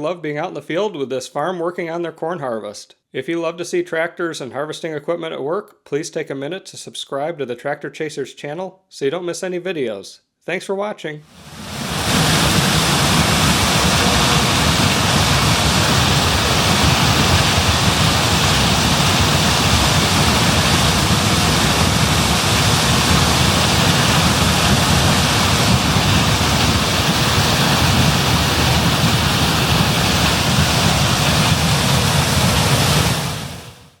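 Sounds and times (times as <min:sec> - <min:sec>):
combine harvester running: 0:11.5 - 0:33.8.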